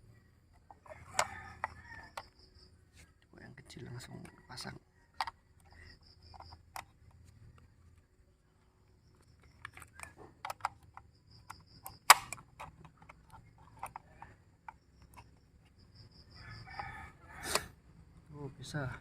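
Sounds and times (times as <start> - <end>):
batteries clicking into charger: 9.1 - 16.1.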